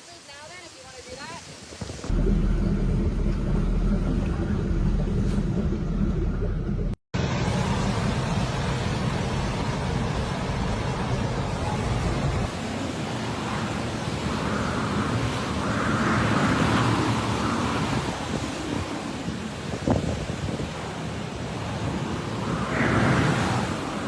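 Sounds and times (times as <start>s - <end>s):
hurricane wind blowing hard: 7.2s - 24.0s
wind rumble on microphone: 7.6s - 24.0s.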